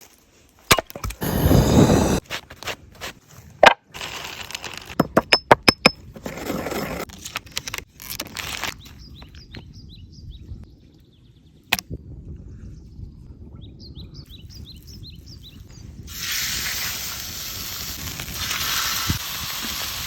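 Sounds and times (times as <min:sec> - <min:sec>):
small birds chirping: 0:08.8 - 0:11.7, 0:13.6 - 0:16.0.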